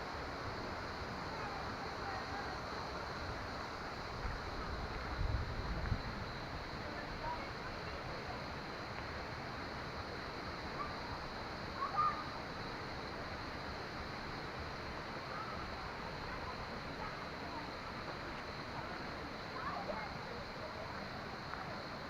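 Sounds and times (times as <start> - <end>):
faint bird-like chirps: 11.8 - 12.3.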